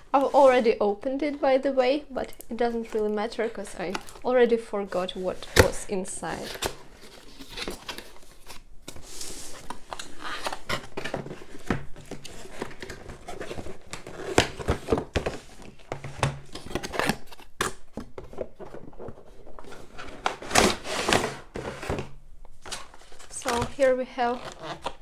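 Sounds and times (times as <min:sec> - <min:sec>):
packaging rustling and crinkling: 0:01.8 - 0:25.0.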